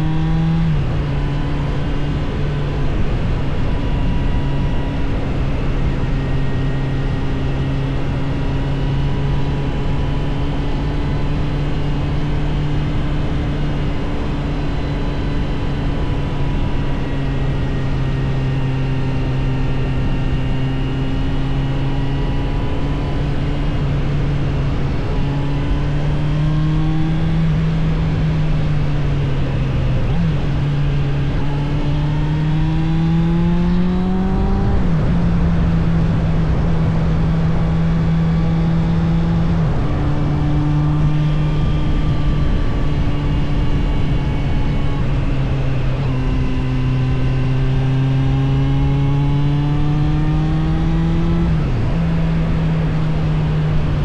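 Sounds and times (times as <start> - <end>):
motorcycle engine running: 0.0 - 54.0
wind and road noise: 0.0 - 54.0.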